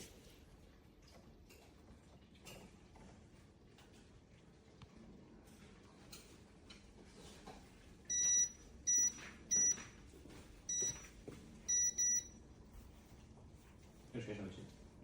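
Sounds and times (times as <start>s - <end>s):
short high-pitched beeps: 8.1s - 9.9s, 10.7s - 11.1s, 11.7s - 12.4s.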